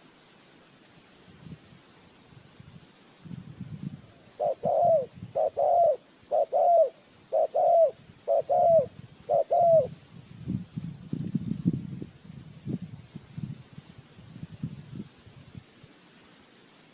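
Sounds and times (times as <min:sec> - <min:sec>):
dove cooing: 0:04.2 - 0:10.0.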